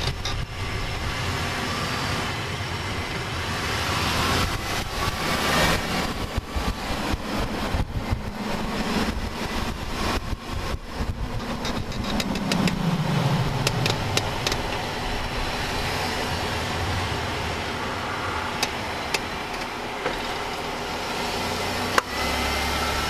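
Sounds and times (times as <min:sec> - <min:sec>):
wheel clicking under braking: 0:00.0 - 0:00.6, 0:04.4 - 0:17.4, 0:18.4 - 0:21.0
low hum: 0:00.0 - 0:21.3.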